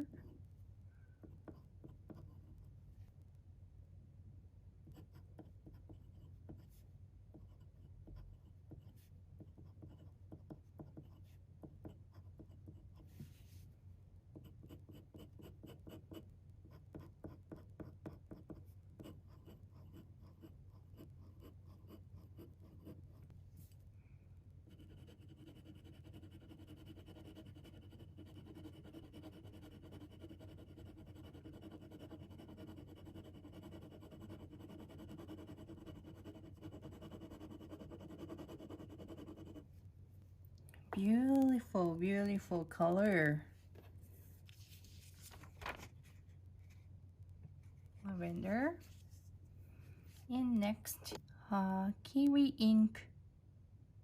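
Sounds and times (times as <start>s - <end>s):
pen scratching on paper: 4.9s - 13.2s, 14.4s - 23.3s, 24.7s - 39.6s.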